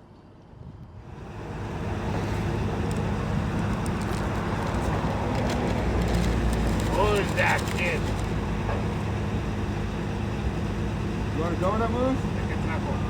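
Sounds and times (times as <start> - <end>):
engine humming: 1.0 - 13.0.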